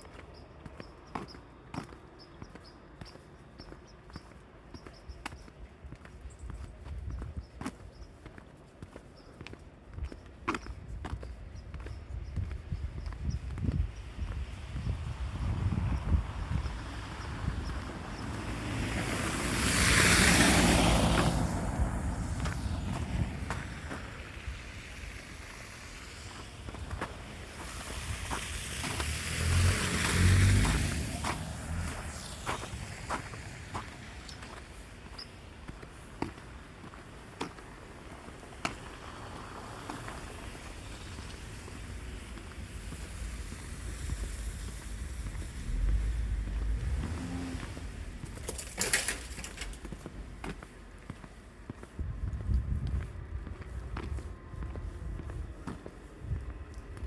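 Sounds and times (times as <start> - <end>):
footsteps on snowy pavement: 0.0 - 57.0
car tyres hissing on wet road: 16.2 - 35.6, 37.8 - 49.8
faint engine hum: 39.5 - 57.0
low rumble: 41.2 - 50.9.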